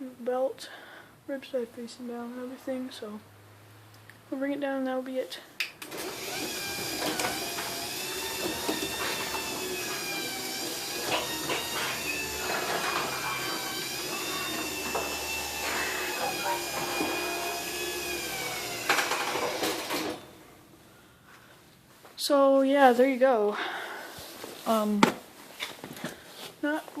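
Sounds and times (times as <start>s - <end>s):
garage door motor whine: 5.8s - 20.5s.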